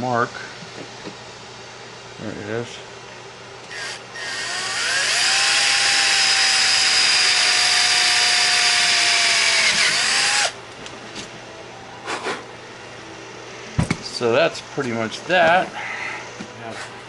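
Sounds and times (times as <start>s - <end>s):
power drill boring steel: 3.7s - 10.6s.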